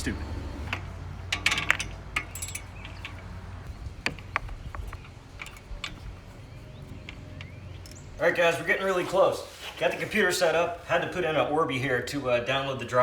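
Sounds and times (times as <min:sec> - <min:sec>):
small metal hardware clinking: 0:00.7 - 0:08.1.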